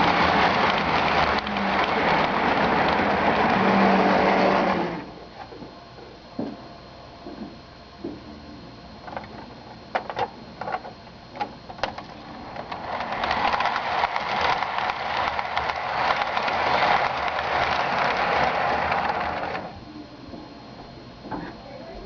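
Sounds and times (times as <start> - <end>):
model train clicks: 0.0 - 4.3, 11.4 - 19.7
model train wheels and motor rolling: 0.0 - 5.6, 9.0 - 19.8.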